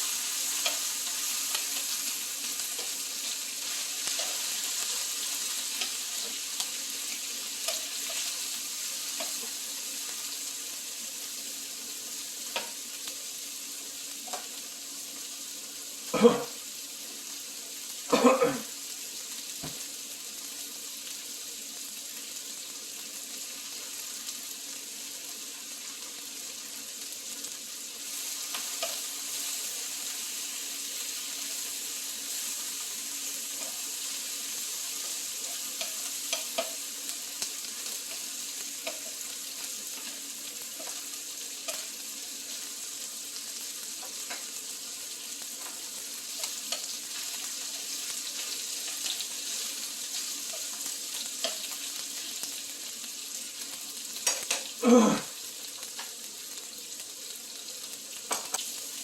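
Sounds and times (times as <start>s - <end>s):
meat sizzling in a pan: 0.0s - 59.0s
utensils clicking against pan: 0.5s - 2.0s, 35.0s - 36.8s, 54.2s - 54.7s.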